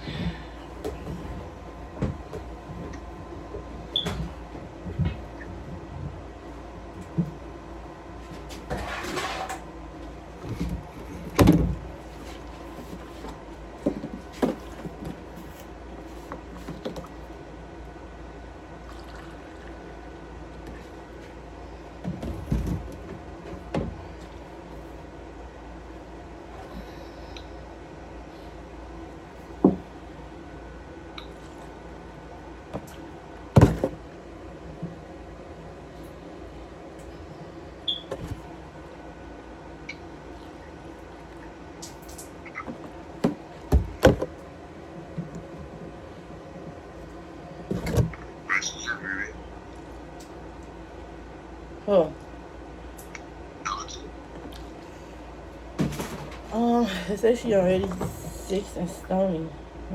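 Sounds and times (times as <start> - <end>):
steady low hum: 0.0 - 59.9
knocks and bumps: 42.6 - 44.4.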